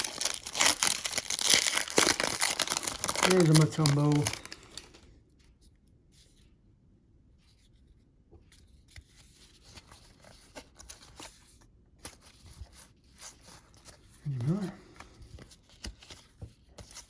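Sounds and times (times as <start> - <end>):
cards clicking and rustling: 0.0 - 5.0, 13.8 - 17.0.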